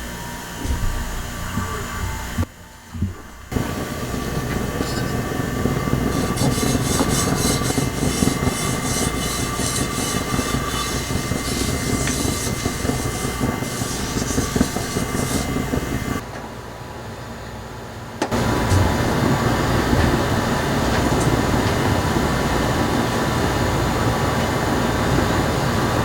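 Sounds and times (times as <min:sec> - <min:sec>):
electric hand mixer whipping: 0:03.5 - 0:16.2.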